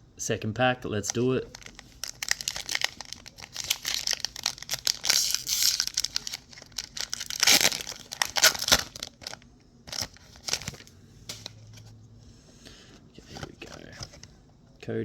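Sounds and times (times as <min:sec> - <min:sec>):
foil wrapper crinkling and tearing: 0:01.0 - 0:10.9.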